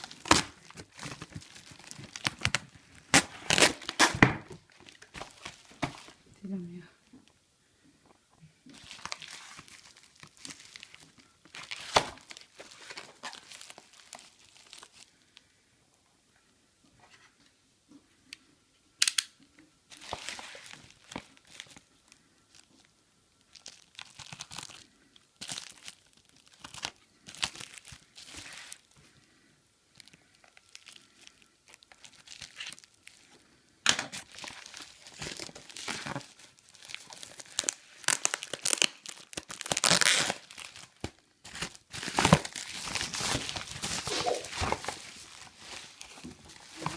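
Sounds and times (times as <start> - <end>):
packaging tearing and crinkling: 0.0 - 6.2, 8.8 - 15.1, 23.5 - 28.9, 30.0 - 46.9.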